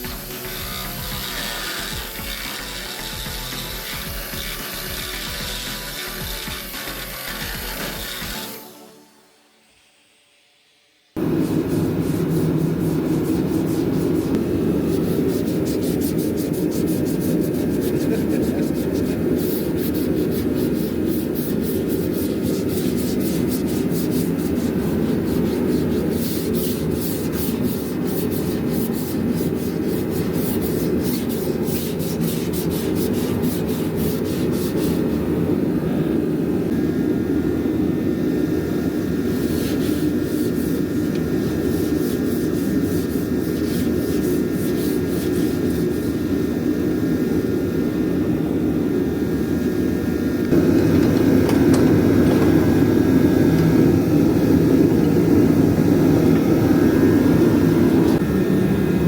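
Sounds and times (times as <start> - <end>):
sandpaper rubbing on metal: 0.0 - 8.6, 11.3 - 35.2, 39.3 - 46.2, 50.5 - 58.2.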